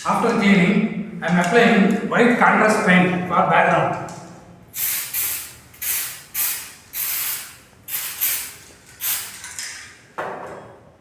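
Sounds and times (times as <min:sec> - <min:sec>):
aerosol spray hissing bursts: 0:04.7 - 0:09.4.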